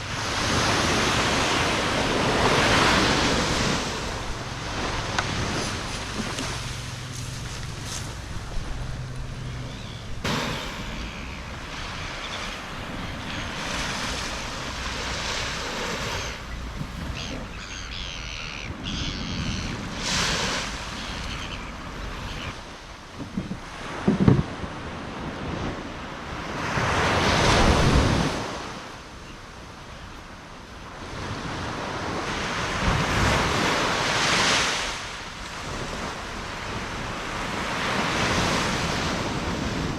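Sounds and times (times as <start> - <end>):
wind buffeting microphone: 0.0 - 25.7
waves washing in: 0.0 - 39.9.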